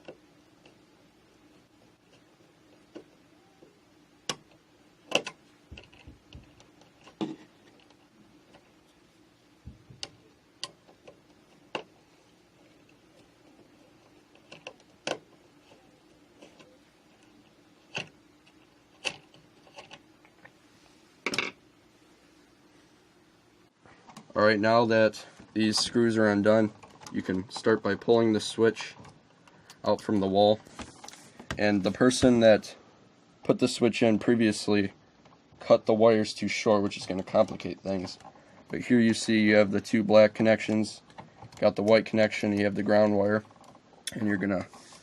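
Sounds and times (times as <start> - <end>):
faint steady hum: 0.0 - 45.0.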